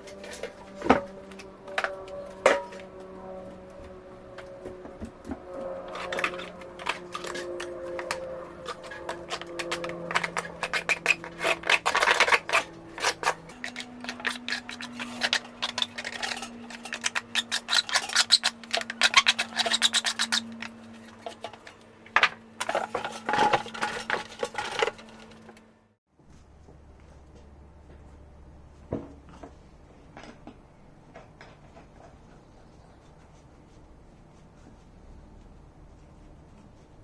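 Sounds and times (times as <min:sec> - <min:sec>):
scraping and rubbing: 0:00.0 - 0:25.6.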